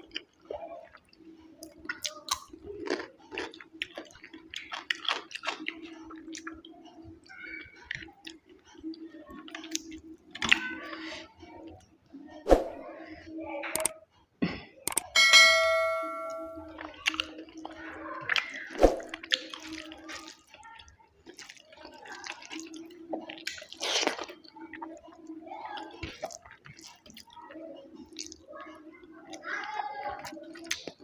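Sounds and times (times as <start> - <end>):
wet chewing: 0.0 - 10.6, 16.8 - 27.4, 28.0 - 28.4
metallic clink: 15.1 - 16.7.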